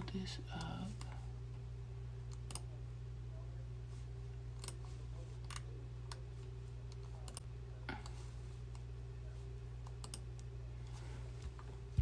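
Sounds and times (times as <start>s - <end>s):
steady low hum: 0.0s - 12.0s
computer keyboard keystrokes: 10.0s - 10.2s.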